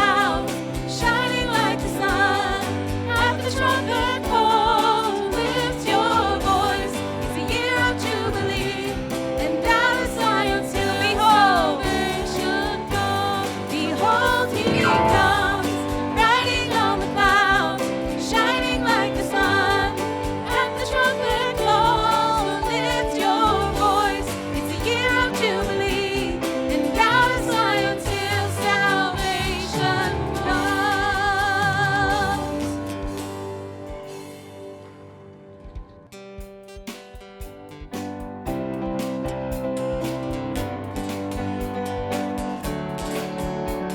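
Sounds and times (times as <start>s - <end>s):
person singing with vibrato: 0.0s - 33.2s
sustained instrumental accompaniment: 0.0s - 43.9s.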